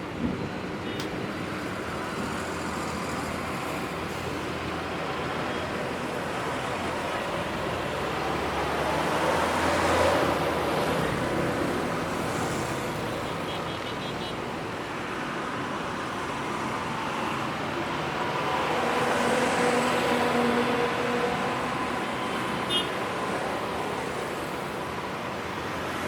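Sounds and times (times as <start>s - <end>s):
highway traffic passing: 0.0s - 26.0s.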